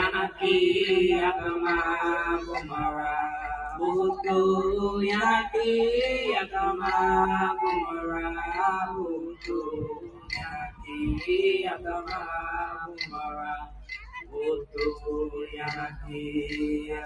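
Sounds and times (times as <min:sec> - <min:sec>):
voices singing a chant: 0:00.0 - 0:17.0.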